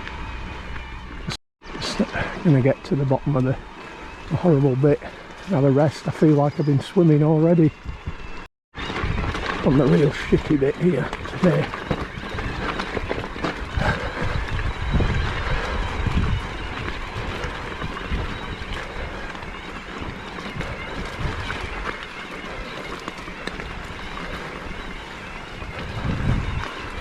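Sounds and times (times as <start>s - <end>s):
bike tyres rumbling on mud and stones: 0.0s - 27.0s
wind on microphone: 7.7s - 27.0s
bike knocks and rattles: 8.8s - 27.0s.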